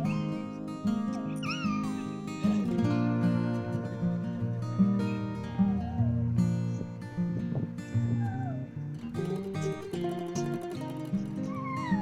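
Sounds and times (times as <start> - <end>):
strummed acoustic guitar: 0.0 - 12.0
cat meowing: 1.1 - 2.6, 10.9 - 12.0.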